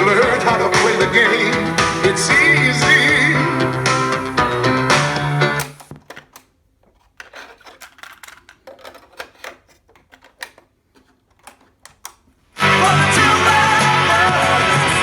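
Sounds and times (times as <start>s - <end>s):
cassette music playback: 0.0s - 5.9s, 12.6s - 15.0s.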